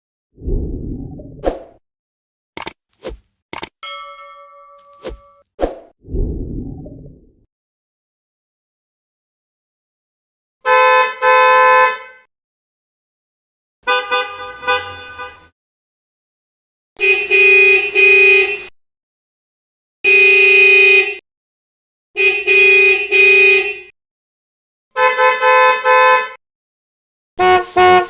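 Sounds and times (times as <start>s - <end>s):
car horns honking: 10.6s - 12.2s, 13.8s - 15.5s, 25.0s - 26.4s.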